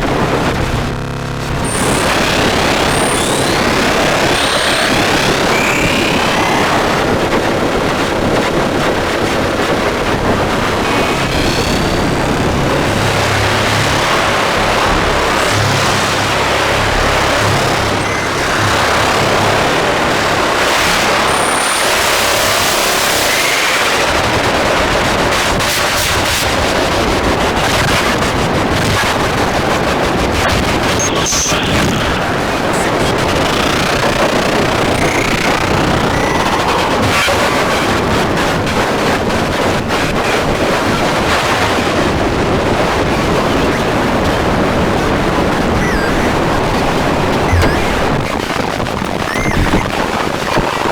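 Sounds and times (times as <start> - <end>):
distorted static noise: 0.0 - 50.9
steady high tones: 1.6 - 7.1, 10.6 - 23.4, 30.8 - 37.6, 45.7 - 46.6, 47.3 - 48.4, 49.2 - 50.0.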